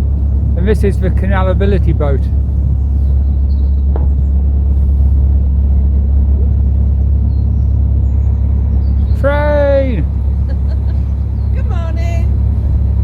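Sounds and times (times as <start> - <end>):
boat engine humming: 0.0 - 13.0.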